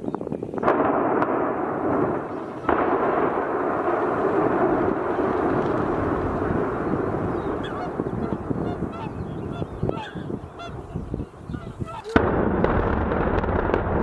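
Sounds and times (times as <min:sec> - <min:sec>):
demolition blast rumble: 0:00.6 - 0:14.0
geese honking: 0:06.8 - 0:12.2.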